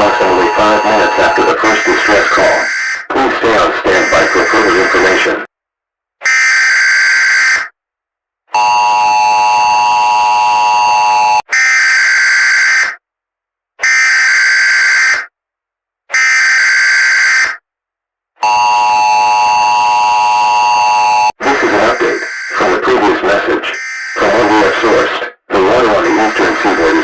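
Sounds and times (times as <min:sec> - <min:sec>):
two-tone attention signal: 0:00.0 - 0:02.7, 0:18.4 - 0:22.8
data bursts: 0:00.0 - 0:05.4, 0:21.4 - 0:25.0, 0:26.0 - 0:27.0.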